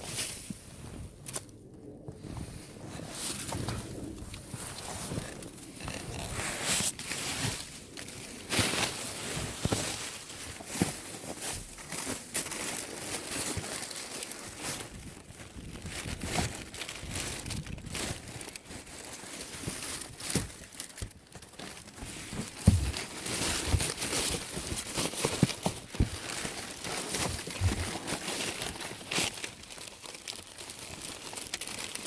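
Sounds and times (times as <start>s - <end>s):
plastic and paper crinkling: 0.0s - 32.0s.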